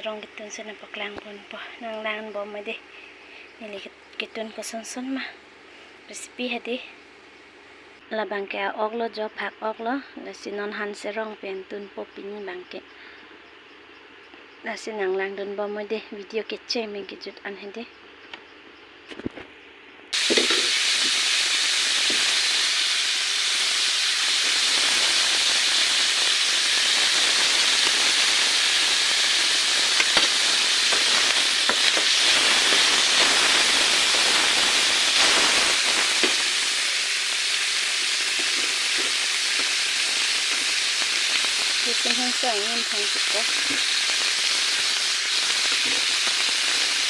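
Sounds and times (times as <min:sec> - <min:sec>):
food sizzling in a pan: 0:20.2 - 0:47.0.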